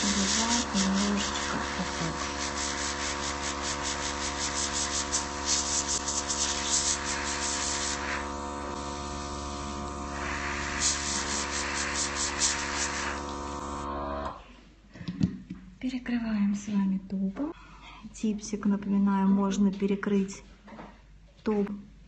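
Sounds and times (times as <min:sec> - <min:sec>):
airbrush spraying hiss: 0:00.0 - 0:13.8
compressor humming: 0:00.0 - 0:15.7.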